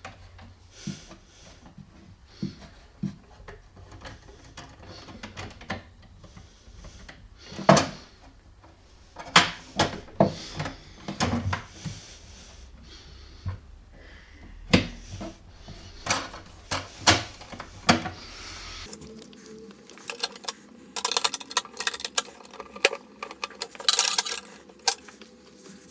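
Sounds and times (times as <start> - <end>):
drawers sliding and rubbing: 0.0 - 13.9, 14.6 - 22.4
wooden drawers knocking: 7.6 - 12.0, 14.6 - 18.5.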